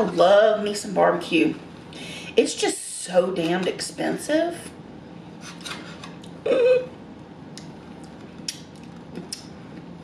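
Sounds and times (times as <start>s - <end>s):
short hummed voice: 6.4s - 7.0s.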